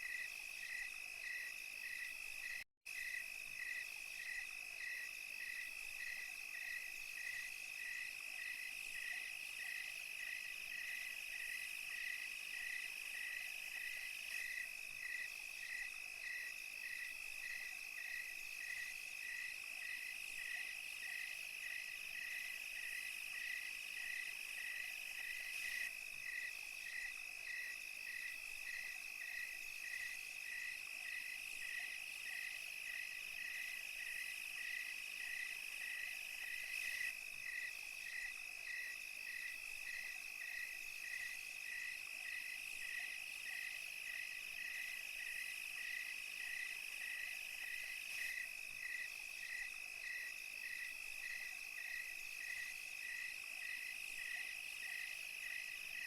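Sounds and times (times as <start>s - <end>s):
cricket chirping: 0.0s - 56.0s.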